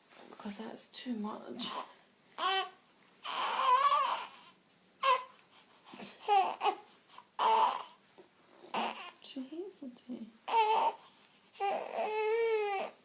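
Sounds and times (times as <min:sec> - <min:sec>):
baby crying: 0:02.4 - 0:05.4, 0:06.2 - 0:08.0, 0:08.7 - 0:09.2, 0:10.4 - 0:13.0.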